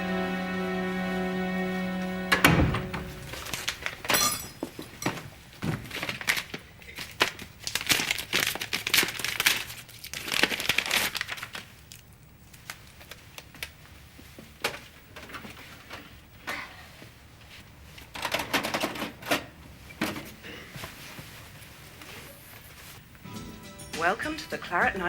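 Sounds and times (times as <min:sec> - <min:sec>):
crinkling and rustling handling: 0:03.2 - 0:23.1.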